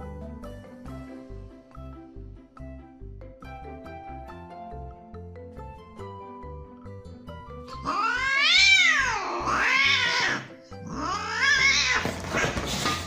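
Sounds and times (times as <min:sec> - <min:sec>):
light background music: 0:00.0 - 0:13.0
cat yowling: 0:07.7 - 0:12.6.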